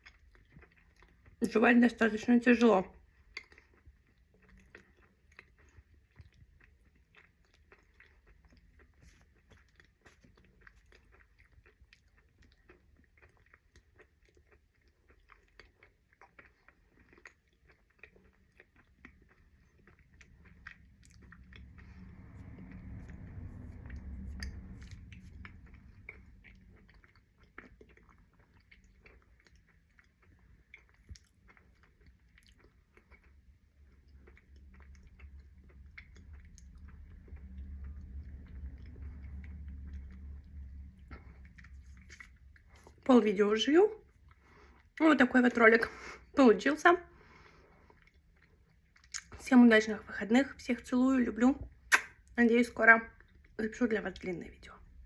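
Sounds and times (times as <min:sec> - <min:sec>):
person chewing crunchy food: 0:00.0 - 0:01.4, 0:02.6 - 0:43.1, 0:44.0 - 0:45.0, 0:47.1 - 0:49.4
muffled low rumble: 0:19.1 - 0:30.0, 0:33.2 - 0:48.2.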